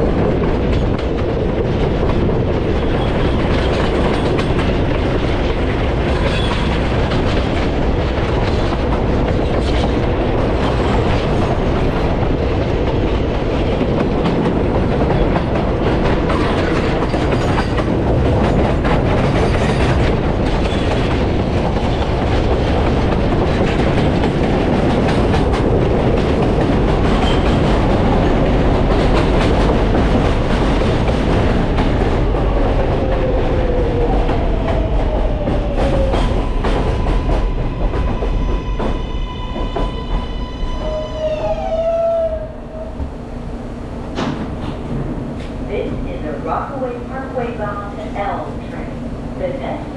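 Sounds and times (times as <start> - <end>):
train wheels rumbling on rail: 0.0 - 49.9.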